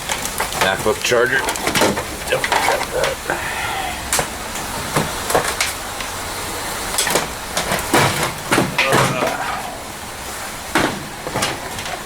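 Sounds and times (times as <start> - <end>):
electronics knocking and clattering: 0.0 - 3.3
steady background hiss: 0.0 - 12.0.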